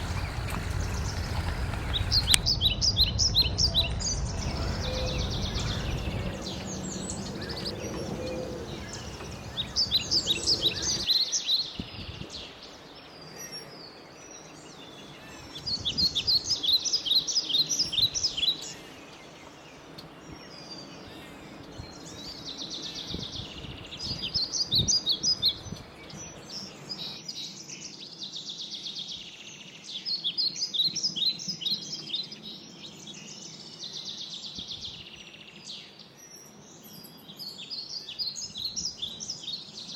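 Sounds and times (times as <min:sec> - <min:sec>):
low rumble: 0:00.0 - 0:11.1
steady background hiss: 0:00.0 - 0:11.7
songbird singing: 0:00.0 - 0:39.9.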